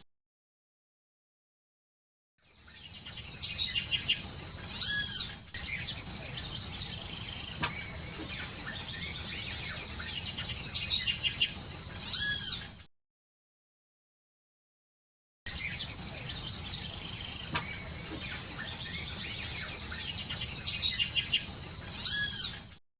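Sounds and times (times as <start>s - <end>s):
parrot chirps and squawks: 4.7s - 5.8s, 12.0s - 12.8s, 22.0s - 22.8s.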